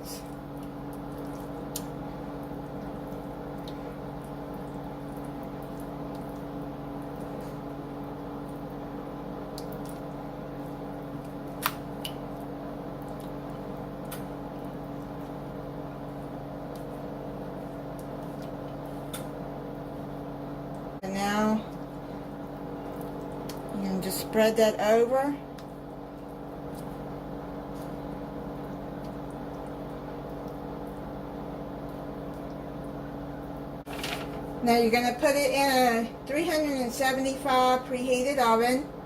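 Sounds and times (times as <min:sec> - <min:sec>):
thick mixture squishing: 0:00.0 - 0:20.0, 0:21.7 - 0:23.8, 0:25.4 - 0:33.1
steady low hum: 0:00.0 - 0:39.0.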